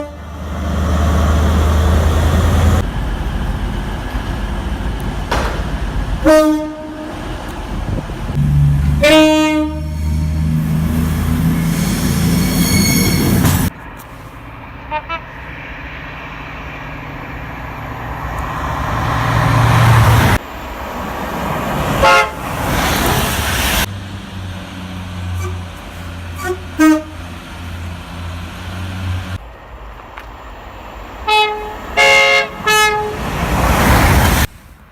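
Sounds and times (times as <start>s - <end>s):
train horn blasts: 0.0s - 0.4s, 6.2s - 7.2s, 8.6s - 10.6s, 14.9s - 15.4s, 22.0s - 22.4s, 25.3s - 25.7s, 26.3s - 27.3s, 31.3s - 33.3s
trains rumbling on rails: 0.0s - 34.9s.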